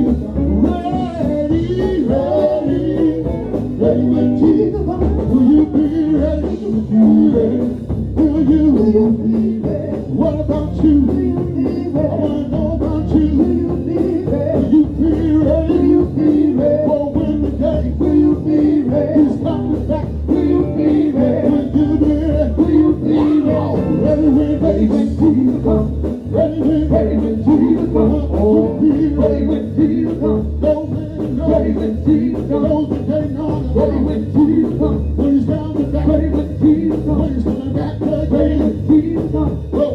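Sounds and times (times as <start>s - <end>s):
live gospel band playing: 0.0s - 39.9s
person singing: 0.0s - 39.9s.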